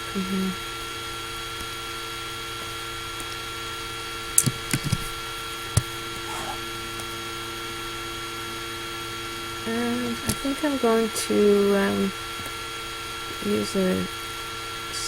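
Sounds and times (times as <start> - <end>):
laptop fan humming and whining: 0.0 - 15.0.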